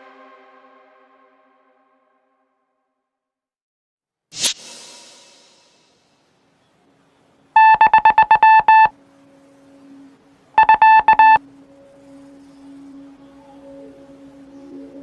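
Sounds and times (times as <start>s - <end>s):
faint low electronic hum: 6.7s - 15.0s
high electronic beeps: 7.6s - 8.9s, 10.6s - 11.4s.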